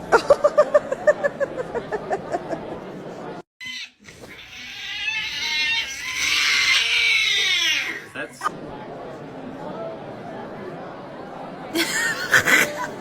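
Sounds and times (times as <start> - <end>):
cat yowling: 3.6 - 8.2.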